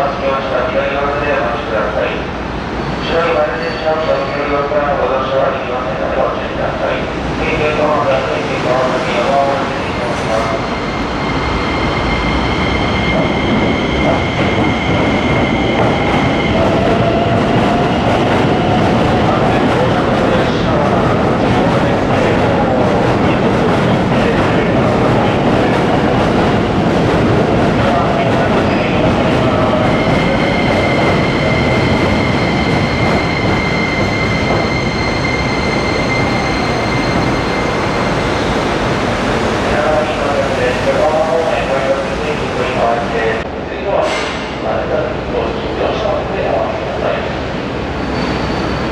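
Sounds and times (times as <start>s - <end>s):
train wheels rumbling: 0.0s - 48.9s
high steady squealing tone: 10.0s - 17.4s, 29.7s - 39.4s, 48.0s - 48.9s.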